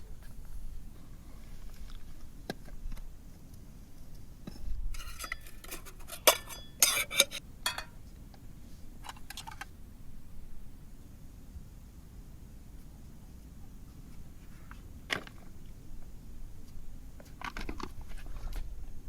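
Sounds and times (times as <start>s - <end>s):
metallic ring: 4.9s - 8.0s
metal cookware clinking: 5.0s - 8.0s.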